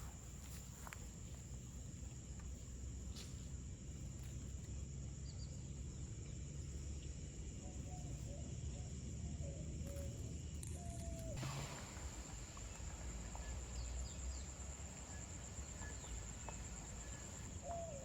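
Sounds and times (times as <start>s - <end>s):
high insect drone: 0.0s - 18.0s.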